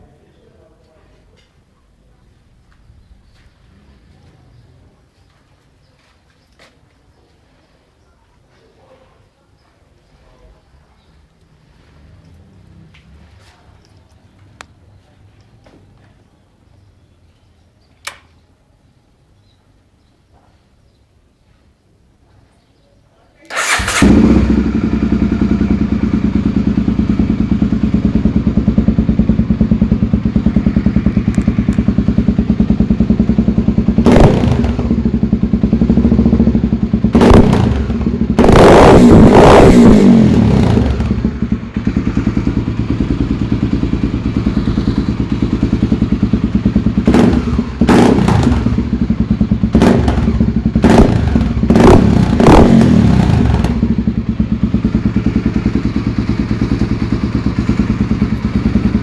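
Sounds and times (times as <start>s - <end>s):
motorcycle engine idling and revving: 2.7s - 5.4s, 11.2s - 16.8s, 23.5s - 59.0s.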